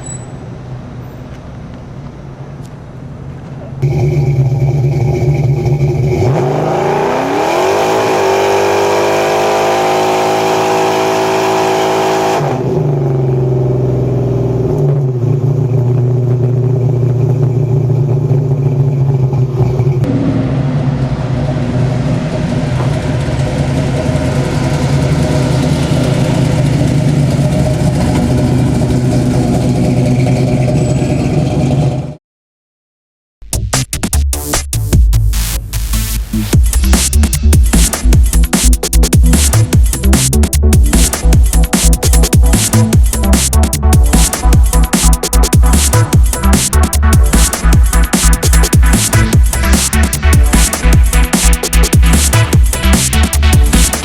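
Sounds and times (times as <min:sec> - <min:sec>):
engine revving: 0:03.8 - 0:32.2, 0:35.3 - 0:54.0.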